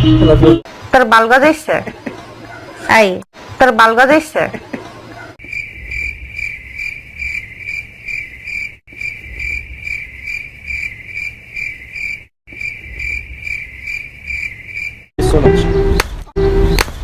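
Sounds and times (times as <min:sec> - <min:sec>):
cricket chirping: 0:05.4 - 0:15.1.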